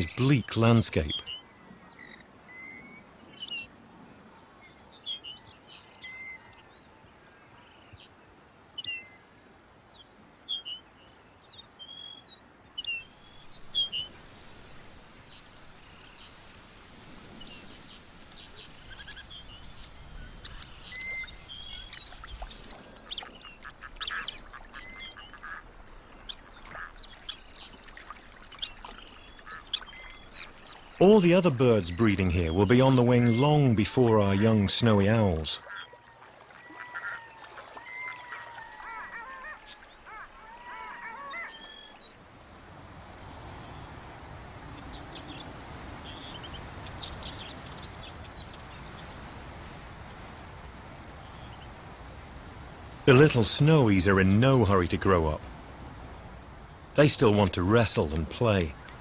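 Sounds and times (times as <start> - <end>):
birds calling: 0.0 - 3.7, 11.9 - 59.0
steady hiss: 13.0 - 22.9.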